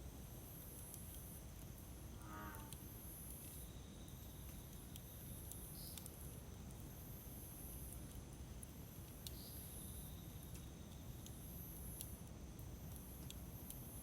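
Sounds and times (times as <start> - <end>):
campfire crackling and popping: 4.4 - 7.0, 7.7 - 9.5, 10.4 - 14.0.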